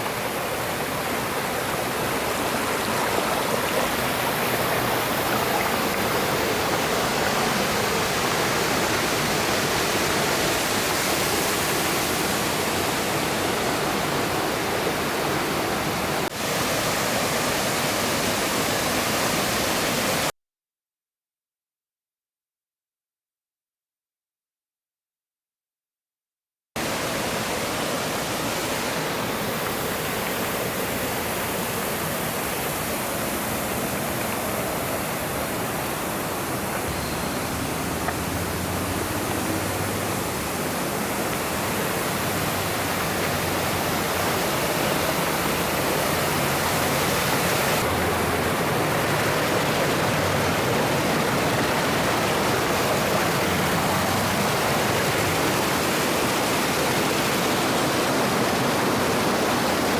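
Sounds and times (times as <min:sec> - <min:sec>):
stream water rushing over rocks: 0:00.0 - 0:20.3, 0:26.8 - 0:59.9.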